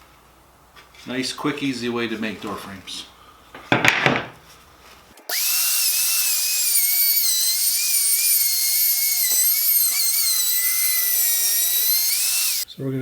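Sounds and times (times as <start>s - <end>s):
electric router whining: 5.3s - 12.7s.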